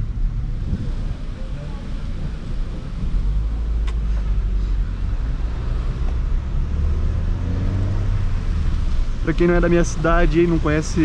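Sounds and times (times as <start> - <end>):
car engine and road noise: 0.0 - 11.0.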